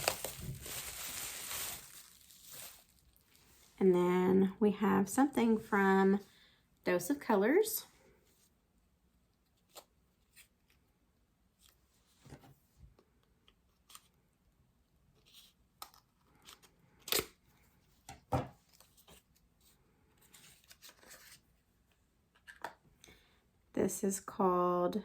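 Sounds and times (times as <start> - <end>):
package snapping: 0.0 - 1.0
package clicks and rustles: 0.0 - 3.3.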